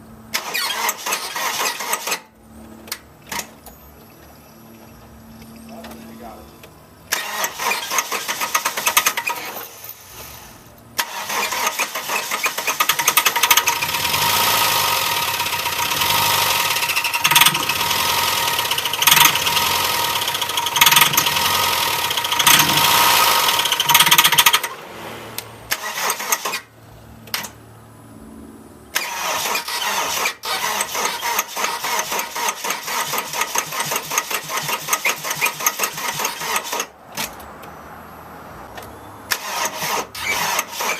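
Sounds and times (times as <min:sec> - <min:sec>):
car engine running: 0:13.0 - 0:25.8.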